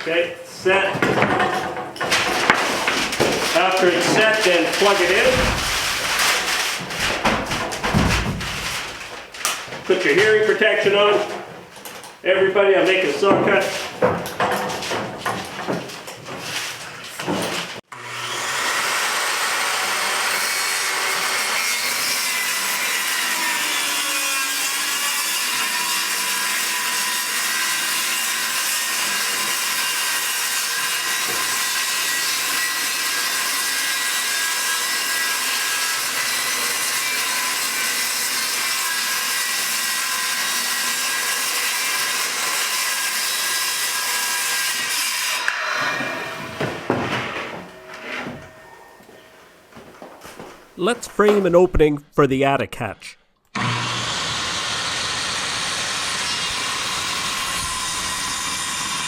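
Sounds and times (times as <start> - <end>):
knocks: 1.0 - 4.2, 5.0 - 9.3
circular saw cutting board: 30.6 - 49.2, 53.6 - 59.0.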